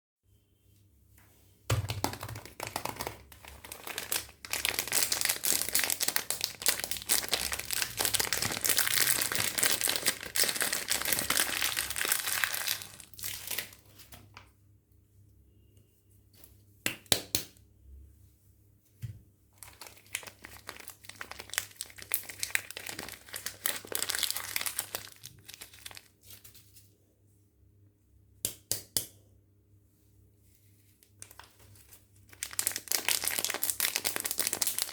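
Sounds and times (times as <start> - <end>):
packaging crinkling and tearing: 1.8 - 13.8, 19.6 - 26.7, 31.2 - 34.9.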